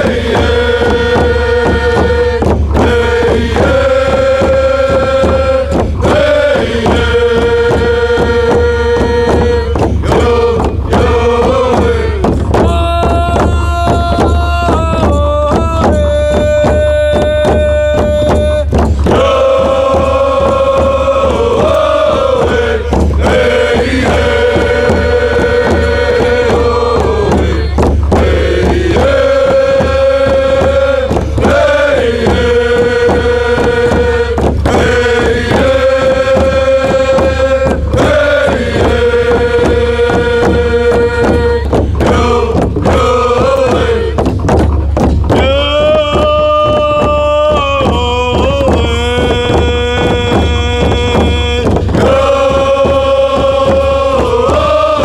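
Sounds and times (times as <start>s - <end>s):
person singing chant-like notes: 0.0s - 44.3s, 45.3s - 55.0s
steady low bass: 17.0s - 45.7s.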